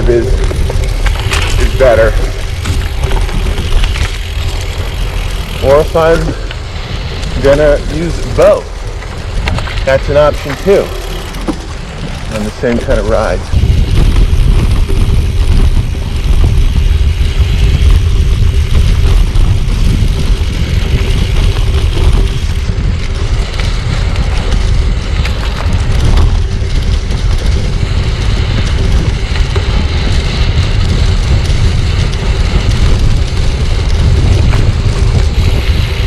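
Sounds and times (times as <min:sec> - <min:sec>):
bike rattling: 0:00.0 - 0:36.0
tyre noise: 0:00.0 - 0:36.0
wind buffeting microphone: 0:00.0 - 0:36.0.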